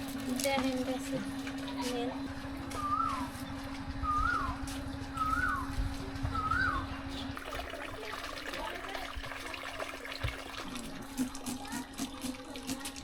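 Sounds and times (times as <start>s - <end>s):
water trickling and splashing: 7.4s - 13.0s.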